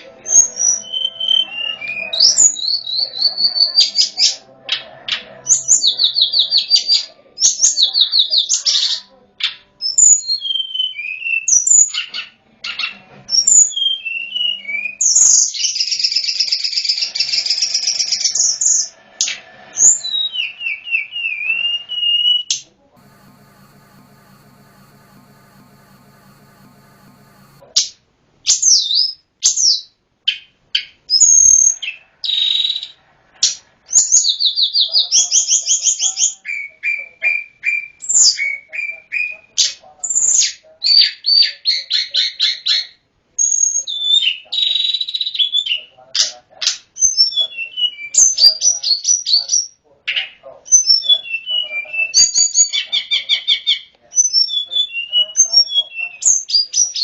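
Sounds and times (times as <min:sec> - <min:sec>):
bird singing high chirps and trills: 0:00.3 - 0:04.2.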